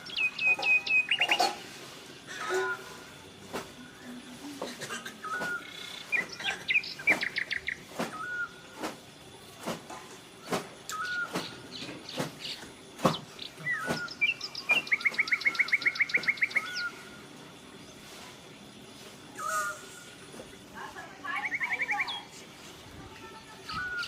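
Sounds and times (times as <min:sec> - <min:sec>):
bird whistled calls: 0:00.0 - 0:01.6, 0:02.4 - 0:03.1, 0:05.2 - 0:08.8, 0:10.4 - 0:17.2, 0:19.4 - 0:20.2, 0:21.3 - 0:22.3, 0:23.6 - 0:24.0.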